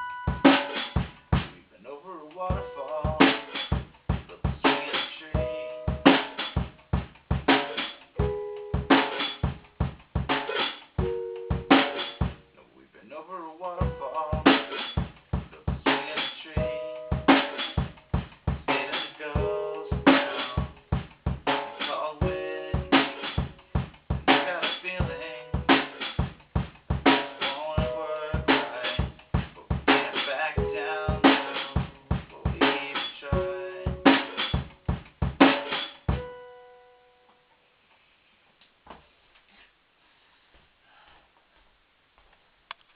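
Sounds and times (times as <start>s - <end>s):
kick and snare drum hits: 5.9s - 7.9s, 8.8s - 12.4s
pitched instrument notes: 8.2s - 9.8s, 10.5s - 12.5s.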